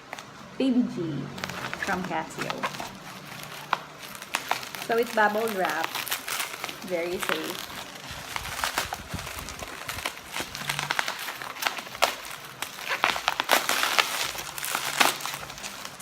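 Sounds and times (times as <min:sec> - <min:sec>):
bubble wrap crinkling: 0:00.0 - 0:00.5, 0:01.3 - 0:16.0.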